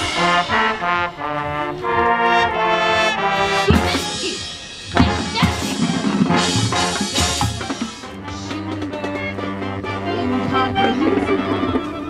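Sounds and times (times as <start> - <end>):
marching band brass playing: 0.0 - 12.0
heavy low band hit: 3.6 - 8.2.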